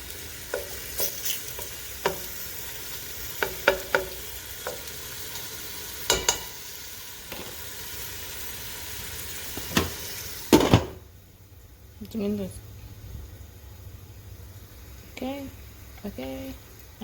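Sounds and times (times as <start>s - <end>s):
food sizzling in a pan: 0.0s - 17.0s
utensil knocking against pan: 3.4s - 4.9s, 6.1s - 6.6s.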